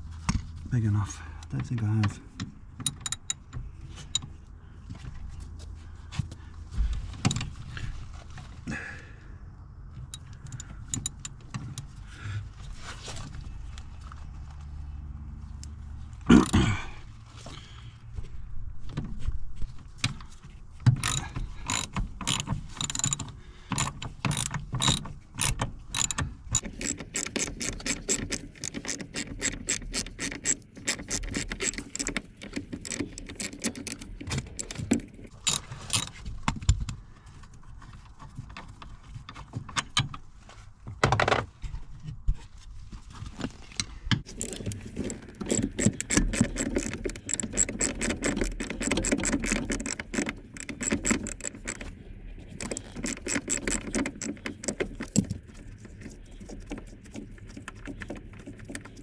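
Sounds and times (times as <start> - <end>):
hand ratchet clicking: 2.8 - 3.4, 10.2 - 11.4, 21.0 - 36.1, 44.3 - 59.0.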